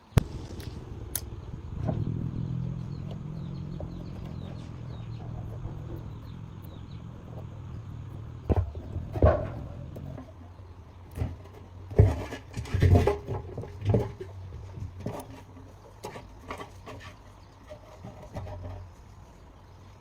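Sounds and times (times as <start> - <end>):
engine running at low speed: 0.0 - 15.8.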